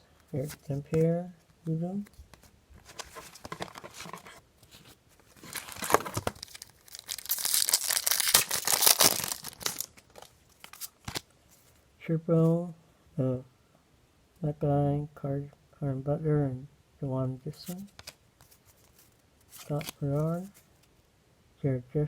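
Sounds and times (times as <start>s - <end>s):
wrapper tearing and crinkling: 5.3s - 11.2s.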